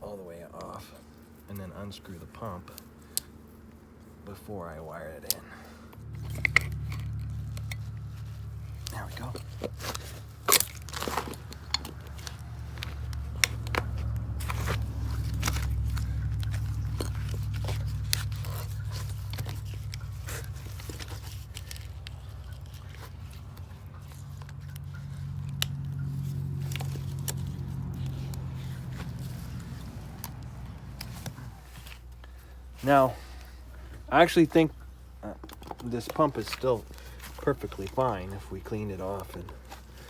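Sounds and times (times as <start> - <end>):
tools clicking and scraping: 5.2 - 32.5.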